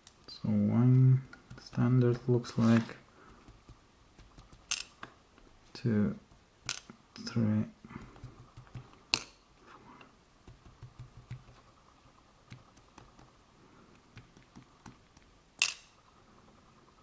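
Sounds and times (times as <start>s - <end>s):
lock pins clicking: 4.4s - 5.1s, 6.6s - 7.0s, 15.2s - 16.0s.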